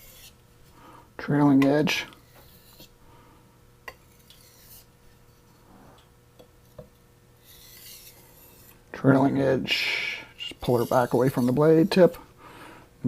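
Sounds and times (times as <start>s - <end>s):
faint blade scrapes: 0.0s - 0.4s, 2.2s - 3.0s, 3.9s - 5.8s, 7.4s - 9.3s, 10.3s - 12.2s
knife blade clicking on whetstone: 7.4s - 8.7s.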